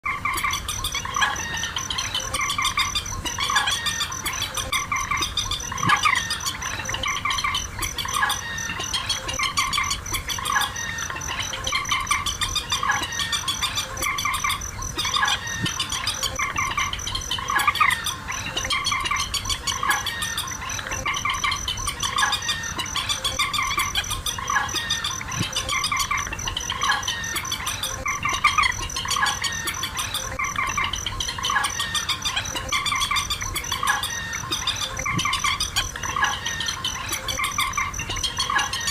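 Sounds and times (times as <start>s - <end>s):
chorus of waterbird calls: 0.0s - 38.9s.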